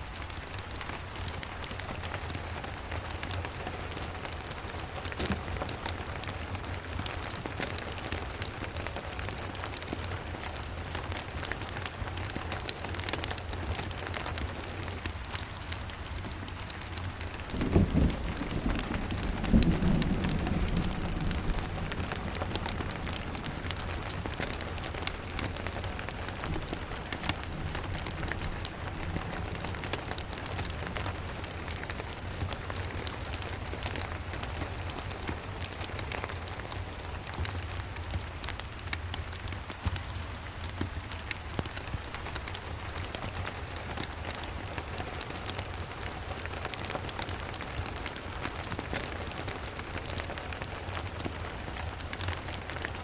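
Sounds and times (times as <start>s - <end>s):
steady rain: 0.0s - 53.0s
low thunder rumble: 17.4s - 31.0s
thunderclap: 17.5s - 30.2s.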